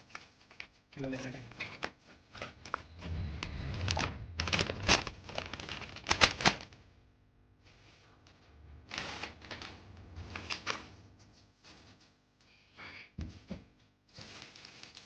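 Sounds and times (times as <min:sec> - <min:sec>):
packaging crinkling and tearing: 0:04.5 - 0:06.8, 0:14.2 - 0:15.0.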